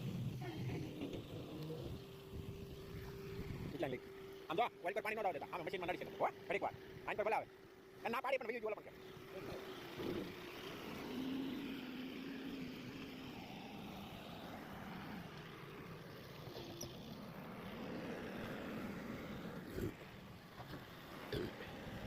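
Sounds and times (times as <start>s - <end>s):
diesel engine running: 0.0s - 22.0s.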